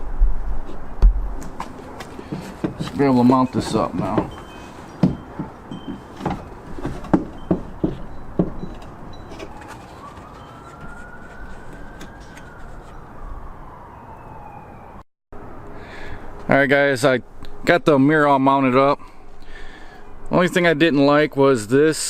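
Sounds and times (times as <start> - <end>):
distant siren wailing: 1.6 - 15.6
knocks and clicks of mirror hardware: 2.2 - 3.0, 3.6 - 9.6.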